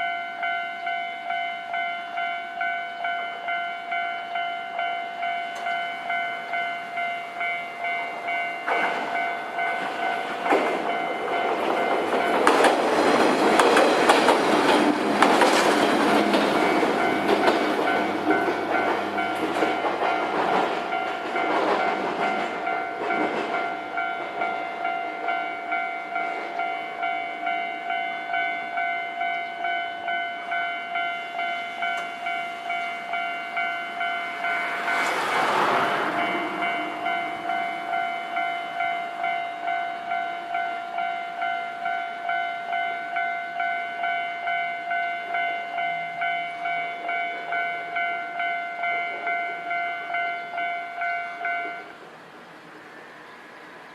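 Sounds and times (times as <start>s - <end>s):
level-crossing warning bell ringing: 0.0s - 52.0s
train wheels clattering over rails: 8.3s - 25.4s.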